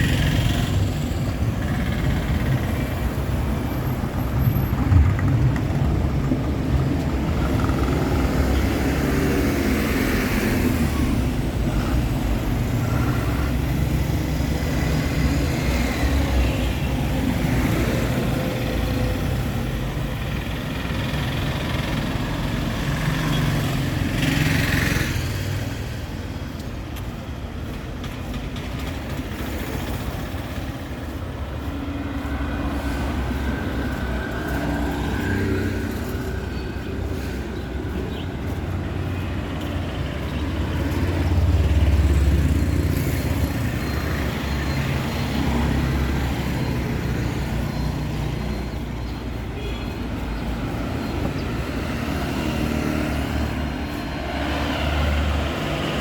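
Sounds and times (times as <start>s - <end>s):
vehicle engines passing: 0.0s - 56.0s.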